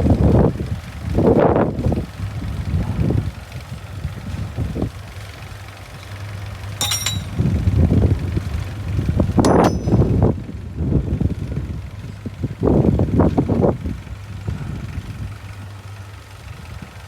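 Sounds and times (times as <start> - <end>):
metallic clank with ringing squeal: 6.8 - 7.4, 9.5 - 10.1
metallic clink: 6.8 - 7.5, 9.5 - 10.2.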